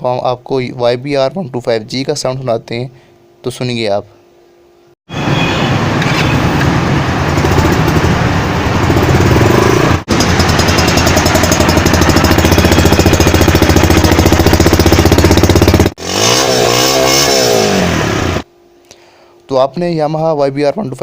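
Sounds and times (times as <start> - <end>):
motorcycle engine running: 6.1 - 18.5.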